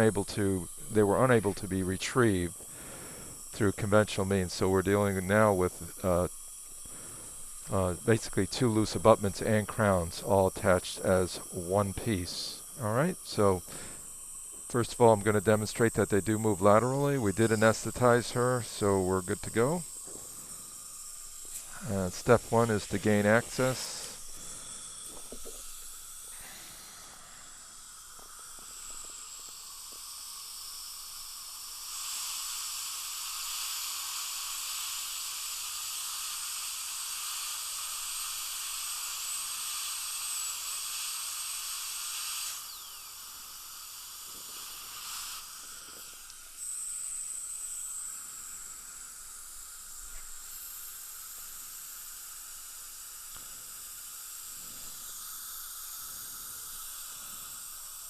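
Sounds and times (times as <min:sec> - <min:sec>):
dental drill whine: 0:00.0 - 0:58.0
low steady hiss: 0:00.0 - 0:58.0.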